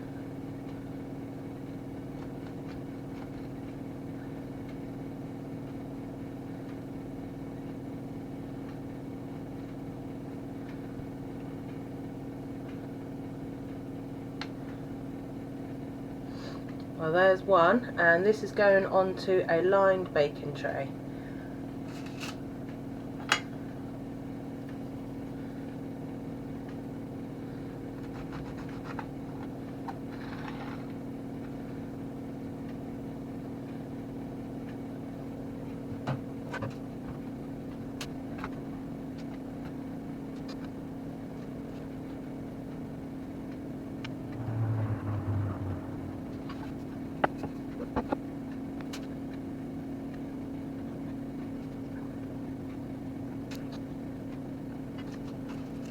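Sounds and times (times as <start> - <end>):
low mechanical hum: 0.0 - 55.9
low knock and rumble: 44.0 - 48.2.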